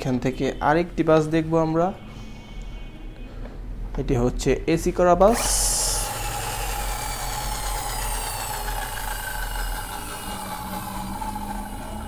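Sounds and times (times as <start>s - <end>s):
low mechanical hum: 0.0s - 12.0s
mid-pitched whine: 5.3s - 12.0s.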